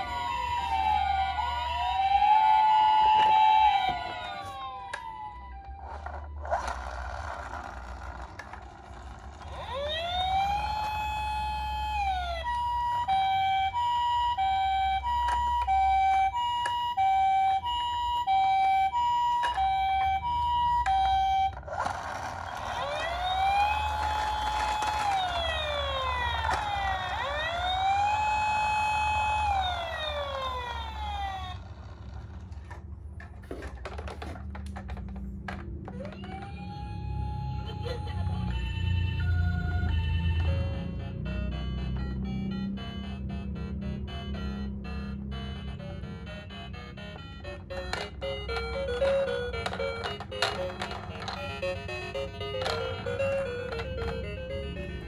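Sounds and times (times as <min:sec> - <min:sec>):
toy ambulance electronic sirens: 0:00.0 - 0:55.0.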